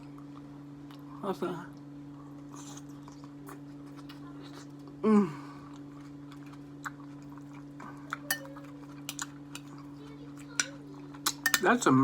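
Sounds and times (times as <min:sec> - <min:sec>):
chewing with wet mouth clicks: 0:01.7 - 0:05.0, 0:05.6 - 0:11.7.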